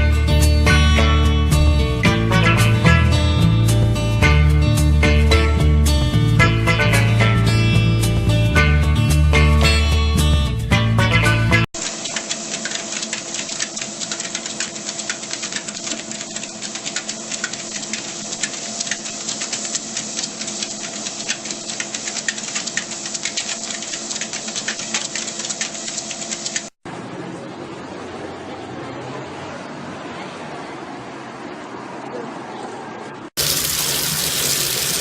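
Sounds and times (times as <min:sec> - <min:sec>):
fast continuous clicking: 0:11.8 - 0:26.8.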